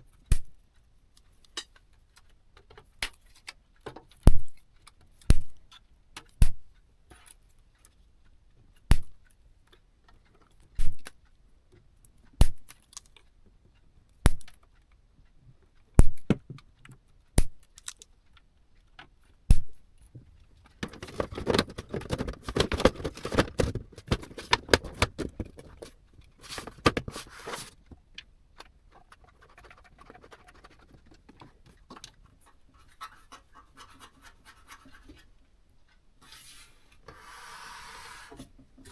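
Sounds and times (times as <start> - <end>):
scraping and rustling: 20.6 - 27.9, 28.9 - 35.4, 36.2 - 38.9.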